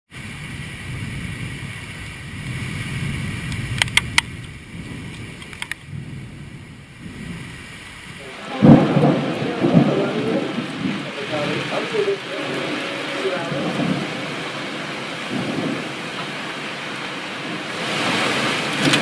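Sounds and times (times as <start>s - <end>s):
rain falling: 0.1s - 19.0s
thunder rumbling: 0.1s - 19.0s
loud thunderclap: 0.3s - 19.0s
sharp clicks: 3.5s - 4.3s, 5.4s - 5.8s.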